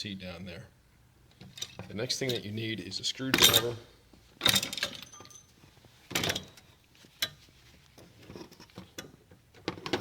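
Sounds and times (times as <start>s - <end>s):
hand tools clinking and knocking: 1.4s - 2.5s, 3.3s - 10.0s.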